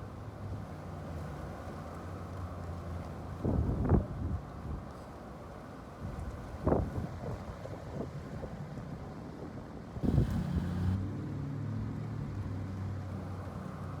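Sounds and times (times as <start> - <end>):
wind buffeting microphone: 10.0 - 10.7
low motor hum: 10.0 - 11.1.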